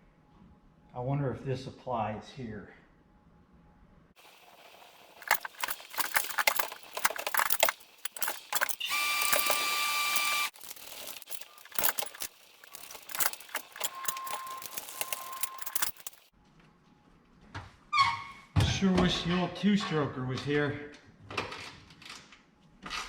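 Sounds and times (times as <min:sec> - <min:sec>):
metal tools clinking: 0:04.2 - 0:16.3
steady whirring: 0:04.7 - 0:16.3.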